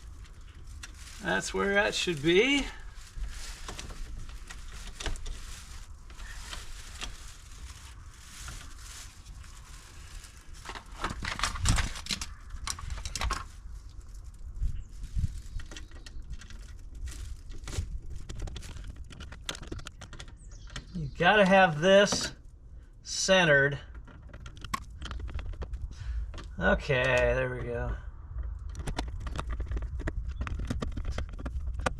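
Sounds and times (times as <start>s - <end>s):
low steady rumble: 0.0s - 15.6s
hands handling electrical wire: 0.0s - 22.4s, 23.9s - 27.7s.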